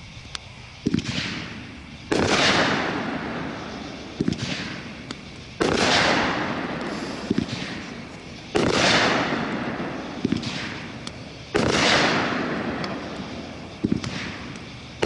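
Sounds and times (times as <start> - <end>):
firework bursts with hiss: 0.0 - 15.0
firework launch thumps: 13.8 - 14.6.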